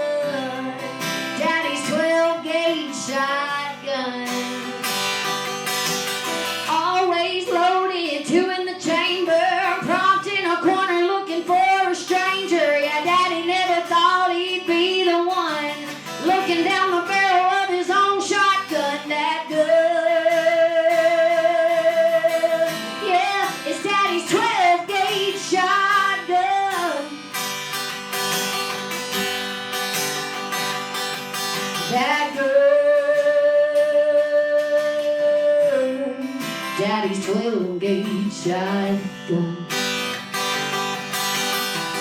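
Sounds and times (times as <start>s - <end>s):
woman singing: 0.0s - 5.2s, 6.4s - 27.4s, 31.5s - 40.0s
acoustic guitar: 0.0s - 42.0s.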